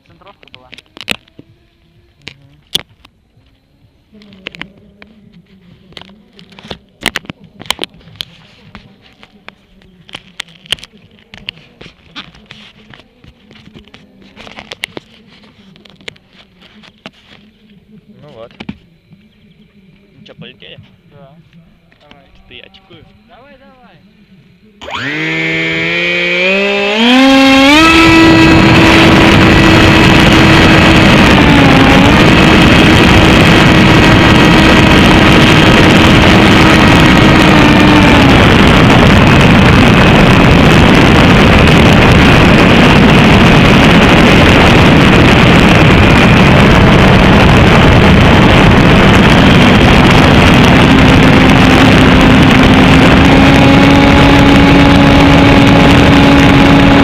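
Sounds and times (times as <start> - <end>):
model aircraft motor whine: 24.8 - 57.0
wind noise rushing: 26.4 - 57.0.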